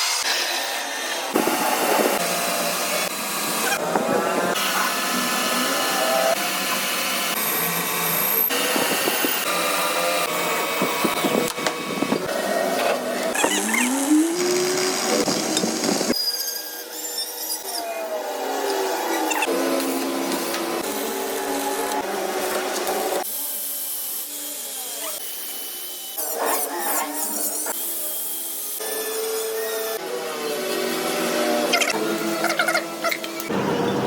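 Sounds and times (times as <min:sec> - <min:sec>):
power tools on metal: 0:00.0 - 0:34.0
motor whining up to speed: 0:00.1 - 0:16.2.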